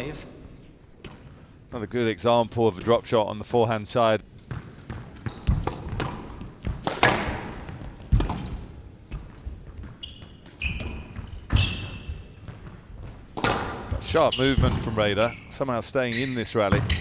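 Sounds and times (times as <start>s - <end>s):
shoes squeaking on court floor: 0.0s - 17.0s
squash ball cracking off rackets: 4.2s - 15.3s.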